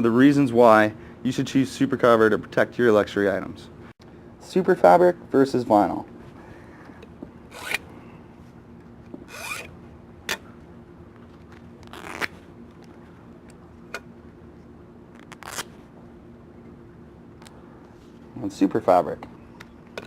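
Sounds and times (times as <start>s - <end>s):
tool scraping vinyl: 7.5s - 7.9s, 9.2s - 9.7s.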